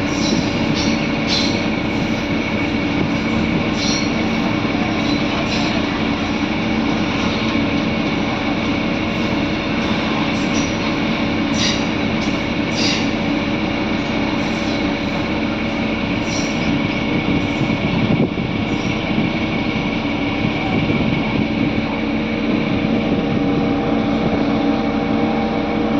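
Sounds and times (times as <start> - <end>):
wheels squeaking on rails: 0.0 - 17.9, 18.6 - 19.2
train rumbling along track: 0.0 - 25.9.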